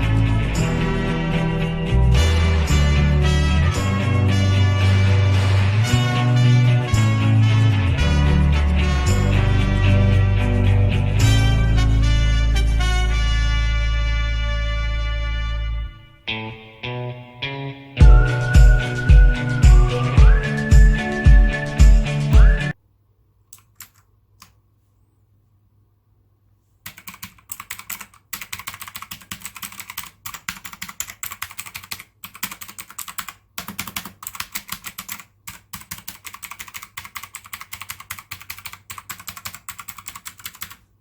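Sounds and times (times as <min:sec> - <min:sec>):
typing on a mechanical keyboard: 0:23.6 - 0:24.5, 0:26.8 - 0:40.9.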